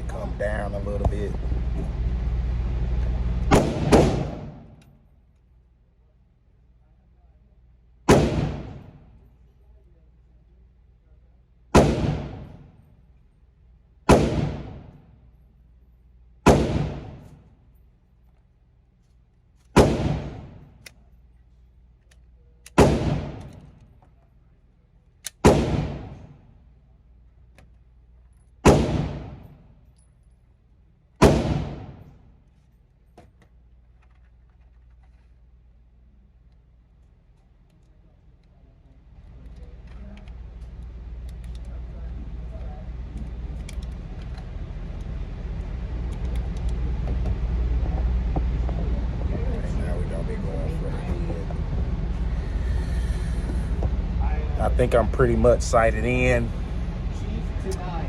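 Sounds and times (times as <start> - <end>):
pistol shots with echo: 3.5 - 4.7, 8.1 - 9.0, 11.8 - 12.7, 14.1 - 15.0, 16.5 - 17.3, 19.8 - 20.7, 22.7 - 23.6, 25.3 - 26.3, 28.6 - 29.5, 31.2 - 32.1.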